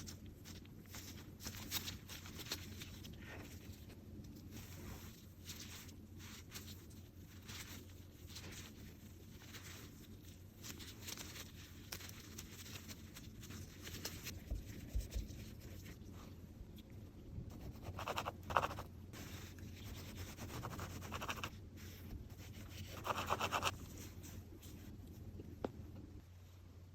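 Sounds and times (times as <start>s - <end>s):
low steady hum: 0.0s - 26.9s
food rubbing and scraping on counter: 17.6s - 24.4s.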